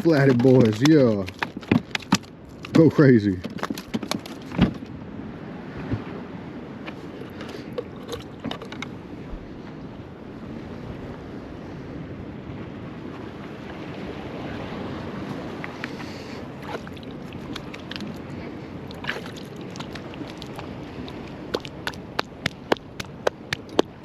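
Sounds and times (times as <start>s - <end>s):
light clicks and knocks: 0.0s - 4.8s
waves washing against jetty: 0.0s - 24.0s.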